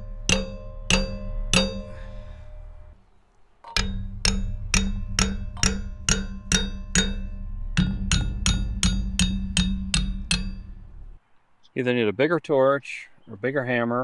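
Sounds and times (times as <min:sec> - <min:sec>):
hammer ringing on metal: 0:00.0 - 0:03.0, 0:03.7 - 0:11.2
steady low rumble: 0:00.0 - 0:03.1, 0:03.8 - 0:11.2.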